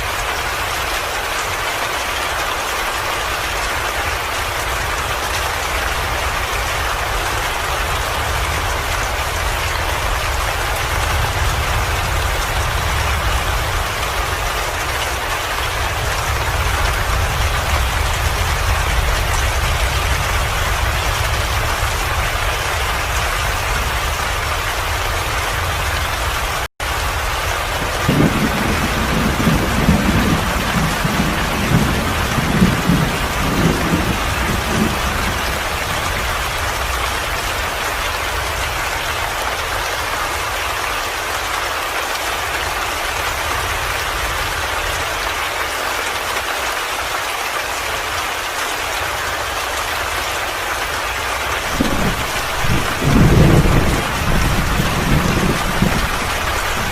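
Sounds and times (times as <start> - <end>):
rain hissing: 0.0 - 56.9
thunder rumbling: 3.5 - 39.8, 51.4 - 56.9.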